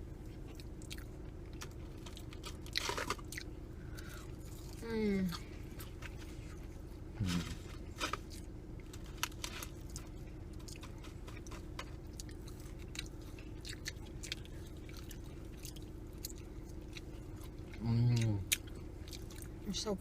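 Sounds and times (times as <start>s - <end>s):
chewing fried food: 0.0s - 19.8s
low hum: 0.0s - 20.0s.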